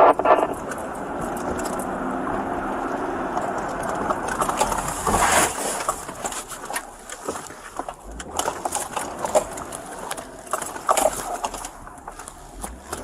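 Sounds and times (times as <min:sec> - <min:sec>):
rush of noise: 0:00.0 - 0:03.2
diesel engine running: 0:00.0 - 0:13.0.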